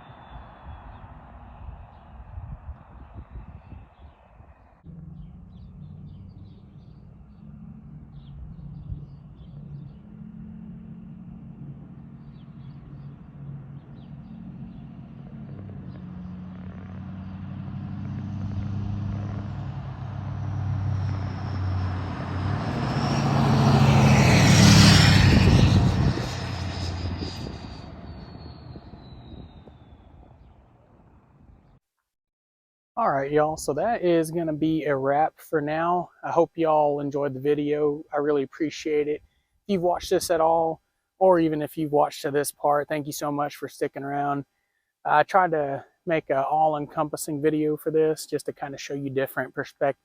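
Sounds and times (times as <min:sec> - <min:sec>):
diesel truck driving past: 0:04.8 - 0:31.7.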